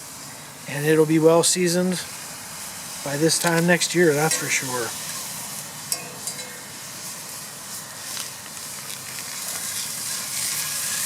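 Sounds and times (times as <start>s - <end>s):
food sizzling in a skillet: 0.0s - 11.0s.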